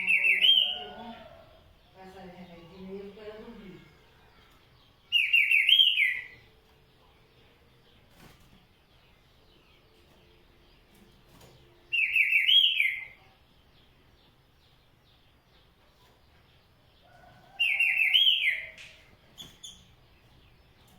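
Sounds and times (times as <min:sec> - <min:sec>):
bird singing whistled notes: 0:00.0 - 0:01.3, 0:05.1 - 0:06.5, 0:11.8 - 0:13.2, 0:17.5 - 0:19.9.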